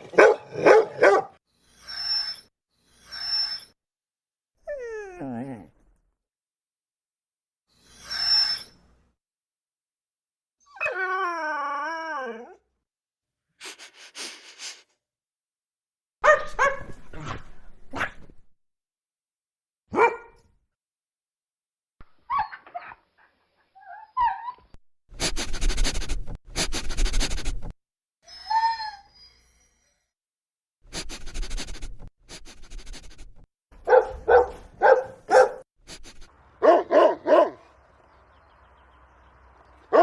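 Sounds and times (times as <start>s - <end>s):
dog barking: 0.0s - 1.4s, 16.2s - 17.0s, 19.9s - 20.4s, 33.8s - 35.6s, 36.6s - 37.7s
dog yipping: 0.1s - 2.4s, 16.2s - 17.0s, 20.0s - 20.3s, 22.3s - 23.0s, 23.8s - 24.7s, 33.8s - 35.6s
dog whining: 4.6s - 5.7s, 7.9s - 8.8s, 28.3s - 29.5s.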